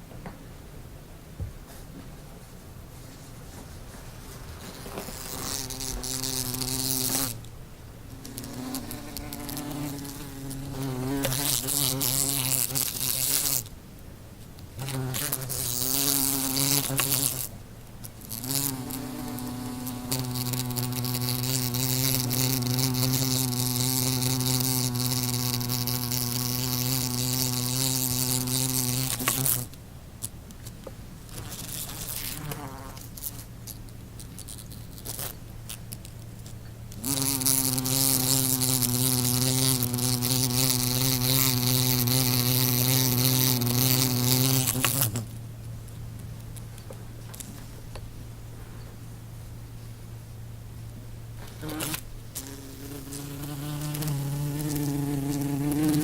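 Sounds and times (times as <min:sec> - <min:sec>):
wasp wings buzzing: 0:04.8 - 0:07.4, 0:08.1 - 0:13.7, 0:14.8 - 0:17.5, 0:18.2 - 0:29.7, 0:31.3 - 0:35.8, 0:36.9 - 0:45.3, 0:51.4 - 0:56.0.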